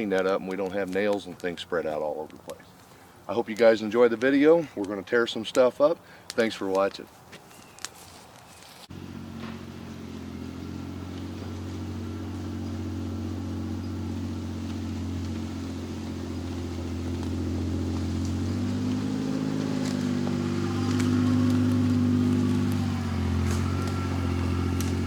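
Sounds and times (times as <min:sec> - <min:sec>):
utility vehicle engine running: 0:08.9 - 0:25.0.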